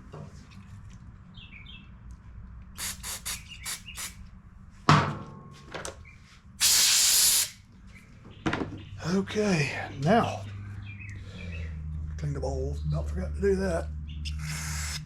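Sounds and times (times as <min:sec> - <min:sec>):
compressed air hiss: 0:02.8 - 0:04.2, 0:06.6 - 0:07.6, 0:14.4 - 0:15.0.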